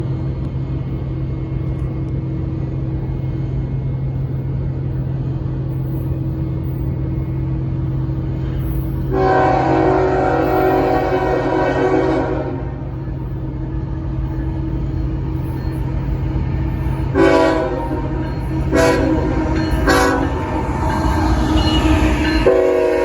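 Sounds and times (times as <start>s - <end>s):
locomotive rumble: 0.0s - 23.0s
locomotive horn chord: 9.1s - 13.0s, 17.1s - 20.7s, 21.8s - 23.0s.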